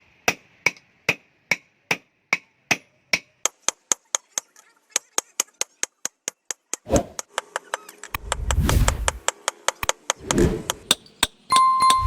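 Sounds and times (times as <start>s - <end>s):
hammer striking steel on anvil: 10.9s - 12.0s.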